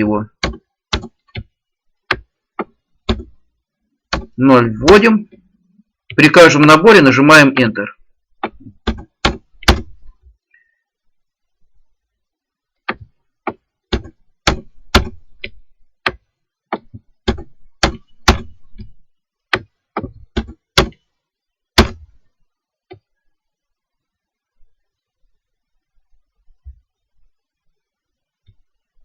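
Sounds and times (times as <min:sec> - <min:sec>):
keyboard keys and mouse clicking: 0:00.3 - 0:03.4, 0:04.1 - 0:04.4, 0:08.4 - 0:10.2, 0:12.8 - 0:21.1.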